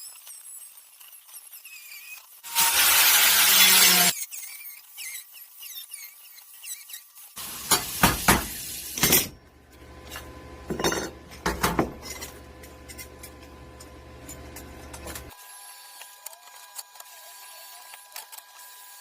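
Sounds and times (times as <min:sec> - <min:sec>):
metal pieces knocking and clinking: 0:10.7 - 0:13.4.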